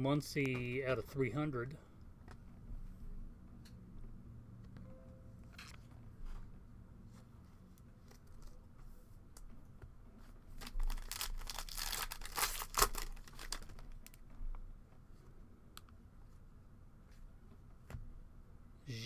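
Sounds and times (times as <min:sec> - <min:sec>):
wrapper tearing and crinkling: 0:10.6 - 0:14.2.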